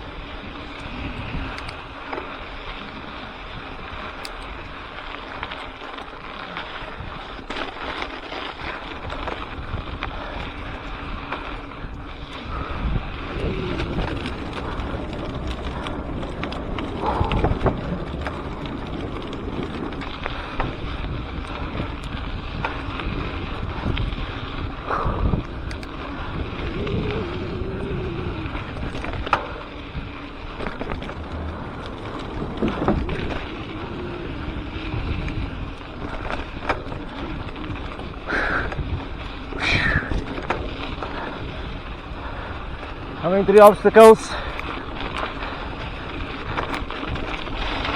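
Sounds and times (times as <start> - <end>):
wind on microphone: 0.0 - 4.9, 8.6 - 47.9
tyre noise on dirt trail: 0.0 - 47.9
bike knocks and rattles: 4.2 - 27.5, 28.1 - 43.0.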